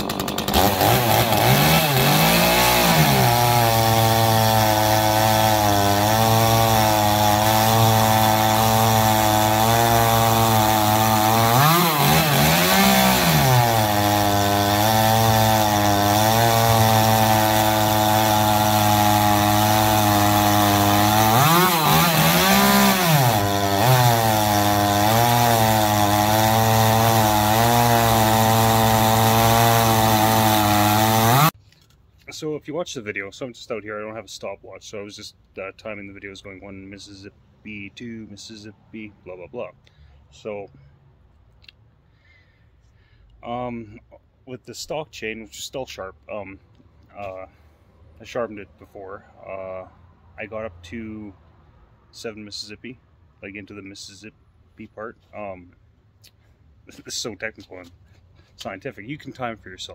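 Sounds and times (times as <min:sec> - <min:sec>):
chainsaw cutting wood: 0:00.0 - 0:32.0.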